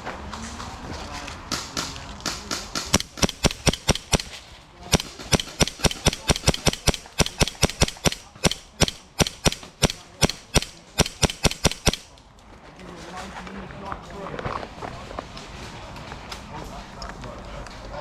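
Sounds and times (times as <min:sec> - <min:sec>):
airsoft gun firing shots: 0:02.8 - 0:12.2.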